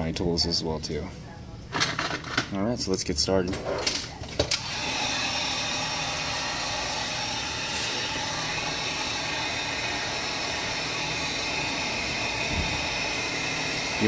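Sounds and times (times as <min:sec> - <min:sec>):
heat gun fan hissing: 0:04.4 - 0:14.0.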